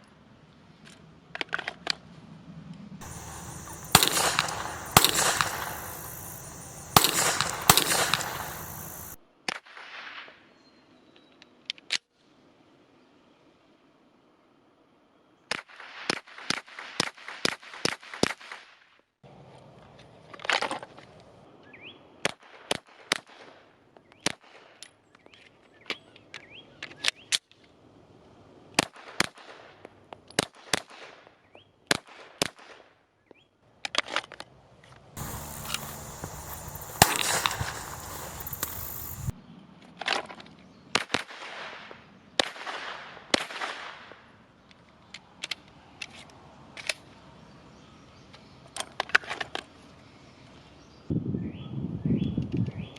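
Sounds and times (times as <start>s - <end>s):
pistol shots: 3.0s - 9.2s, 35.2s - 39.3s.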